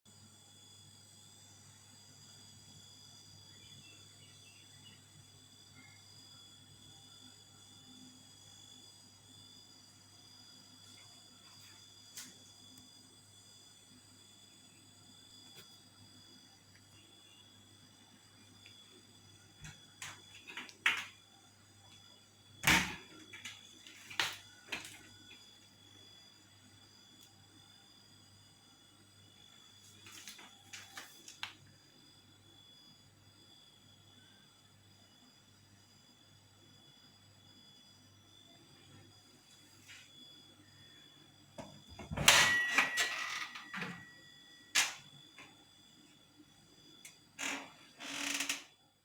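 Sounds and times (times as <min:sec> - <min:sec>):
faint steady hum: 0:00.1 - 0:49.0
object ringing: 0:42.3 - 0:44.0.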